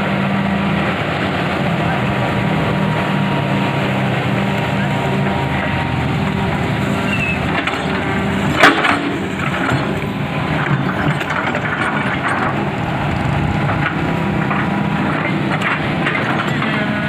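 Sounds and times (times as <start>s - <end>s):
excavator diesel engine running: 0.0s - 17.0s.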